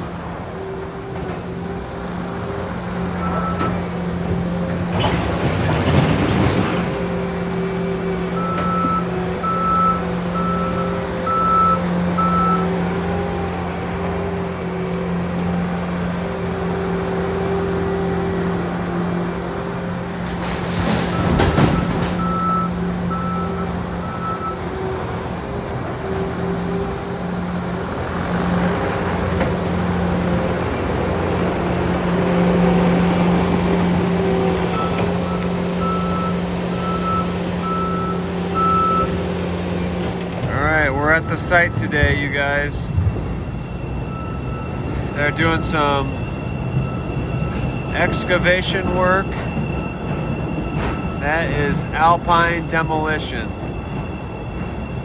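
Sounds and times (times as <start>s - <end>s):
diesel construction equipment running: 0.0s - 55.0s
reversing alarm beeping: 2.8s - 5.8s, 7.4s - 27.9s, 28.5s - 55.0s
loud crash: 4.8s - 7.2s.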